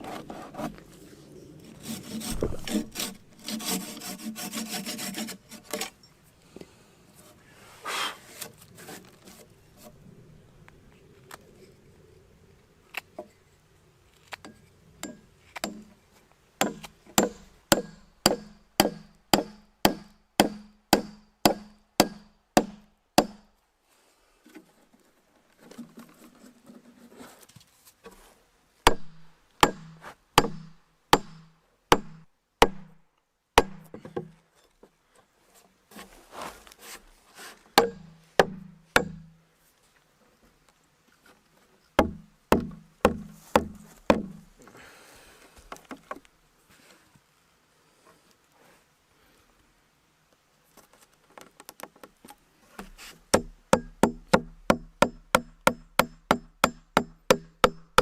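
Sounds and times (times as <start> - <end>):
wood knocking with dull thuds: 2.2 - 3.2, 42.0 - 44.5, 52.8 - 58.0.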